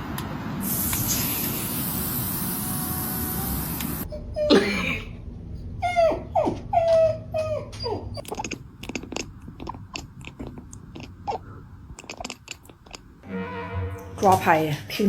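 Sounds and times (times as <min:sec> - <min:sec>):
steady hiss: 0:00.6 - 0:04.0.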